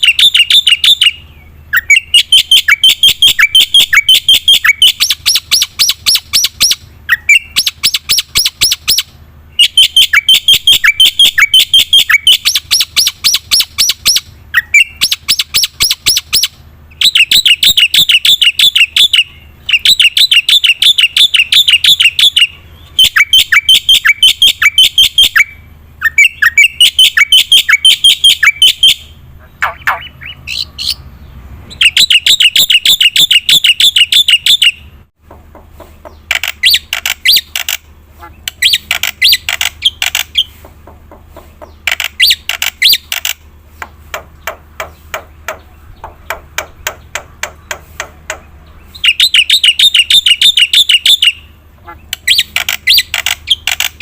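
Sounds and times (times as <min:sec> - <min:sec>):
harsh bird call: 0:00.0 - 0:35.1, 0:35.8 - 0:54.0
myna chattering song: 0:26.8 - 0:34.5.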